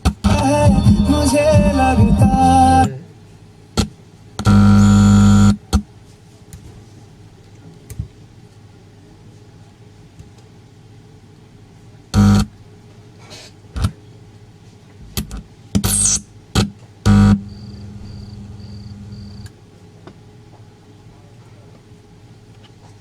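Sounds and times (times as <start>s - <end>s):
speaker amplifier blasts of hum: 0.0s - 3.6s, 17.0s - 19.5s
steady amplifier hum: 0.0s - 6.0s, 16.3s - 19.7s.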